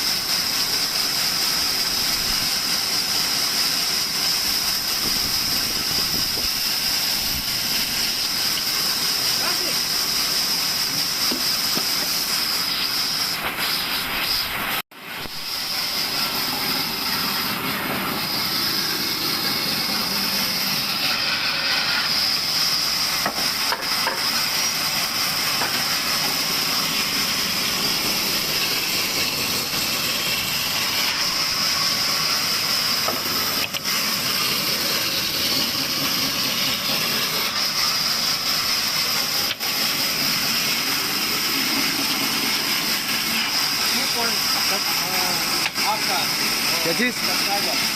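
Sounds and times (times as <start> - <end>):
sawmill whining while cutting wood: 15.6 - 47.9.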